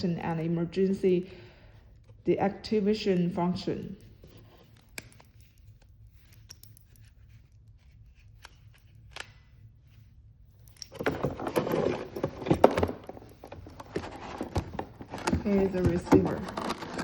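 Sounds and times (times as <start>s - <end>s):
rustling and clatter: 9.8s - 17.0s.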